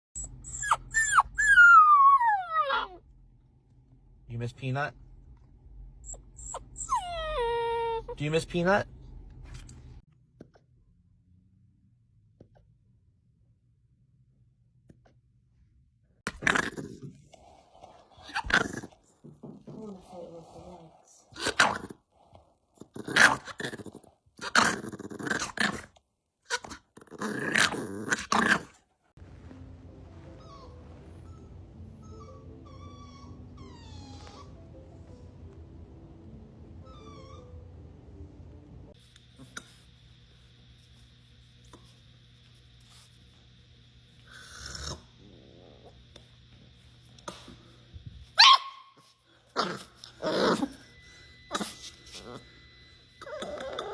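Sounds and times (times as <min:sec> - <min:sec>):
dog growling and barking: 0:00.2 - 0:03.0, 0:16.3 - 0:17.3, 0:18.2 - 0:19.8, 0:21.3 - 0:28.8, 0:44.4 - 0:46.0, 0:49.5 - 0:50.9, 0:53.2 - 0:53.9
dog barking and yipping: 0:48.4 - 0:49.0.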